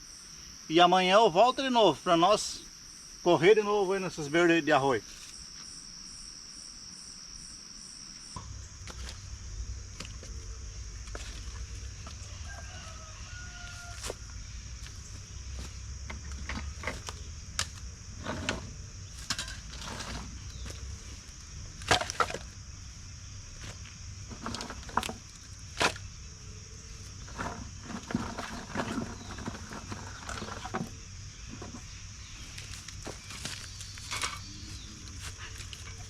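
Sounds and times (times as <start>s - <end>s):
night insects chirring: 0.0s - 36.0s
faint rooster crow: 12.0s - 14.5s.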